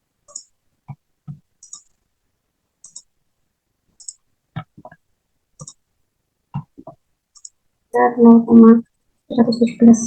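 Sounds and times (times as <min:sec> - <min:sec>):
computer mouse clicking: 0:00.3 - 0:02.0, 0:02.8 - 0:03.1, 0:04.0 - 0:05.0, 0:05.6 - 0:05.8, 0:06.6 - 0:07.6.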